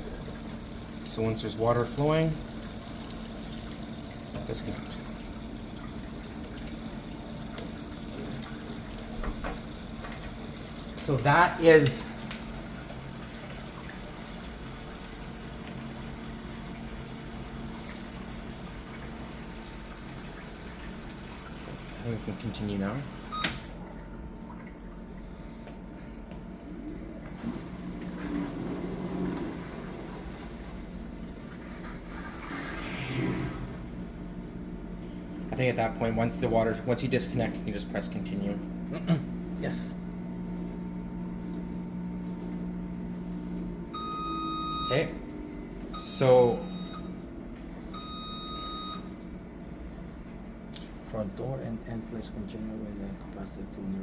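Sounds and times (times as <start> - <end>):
water running into container: 0.0 - 25.6, 27.4 - 38.8
low machine hum: 0.0 - 54.0.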